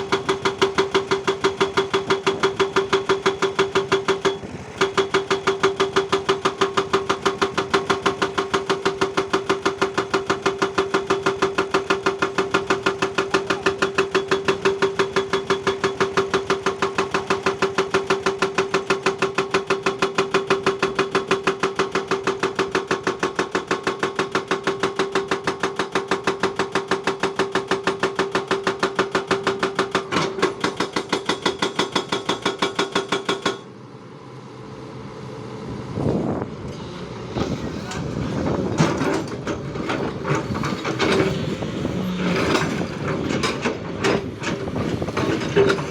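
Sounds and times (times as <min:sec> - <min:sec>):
digging machine pulsing hum: 0:00.0 - 0:21.2, 0:33.8 - 0:45.9.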